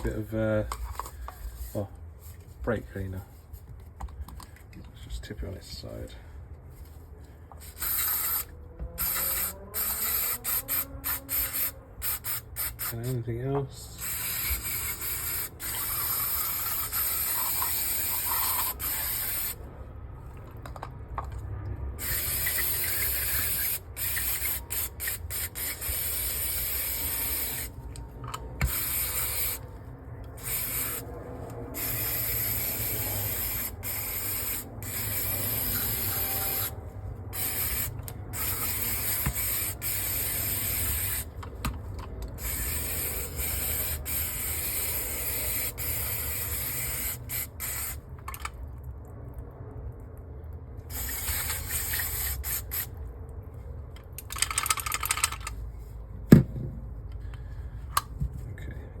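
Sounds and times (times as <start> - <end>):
aerosol spray hissing: 7.6 - 13.2, 14.0 - 19.6, 22.0 - 27.8, 28.6 - 29.6, 30.4 - 31.1, 31.8 - 36.8, 37.4 - 41.3, 42.4 - 48.0.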